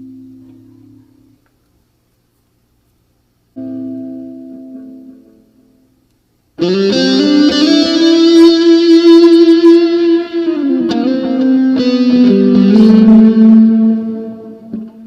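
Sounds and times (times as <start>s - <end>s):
electric guitar chords with chorus: 3.6s - 5.7s, 6.6s - 15.0s.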